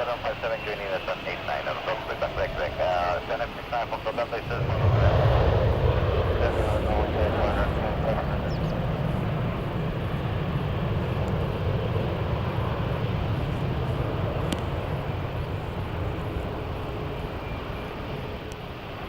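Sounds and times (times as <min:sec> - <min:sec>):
jet engines rumbling: 0:00.0 - 0:19.0.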